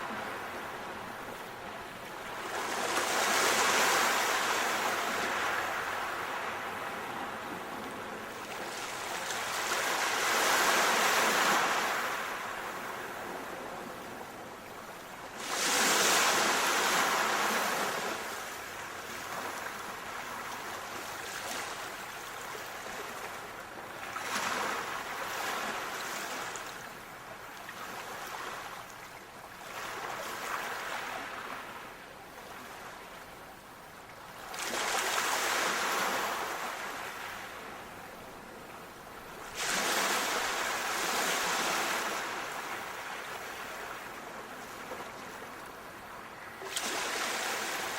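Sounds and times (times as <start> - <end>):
sea waves washing on shore: 0.0 - 47.9.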